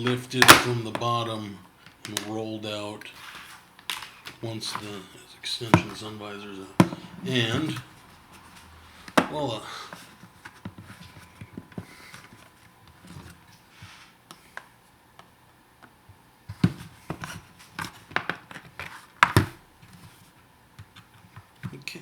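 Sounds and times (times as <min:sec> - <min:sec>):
plastic parts clicking and tapping: 0:00.0 - 0:01.2.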